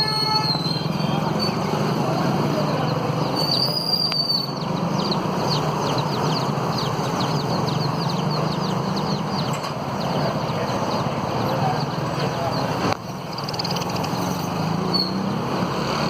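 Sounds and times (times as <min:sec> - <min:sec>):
budgies whistling and chirping: 0:02.6 - 0:12.7, 0:13.3 - 0:14.3.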